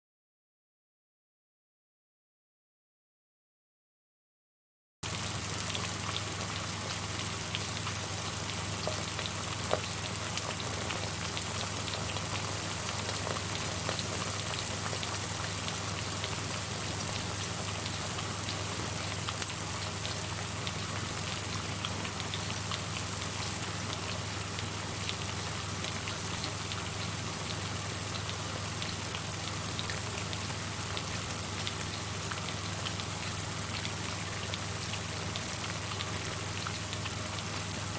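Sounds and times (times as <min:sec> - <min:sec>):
food sizzling in hot oil: 0:05.0 - 0:37.9.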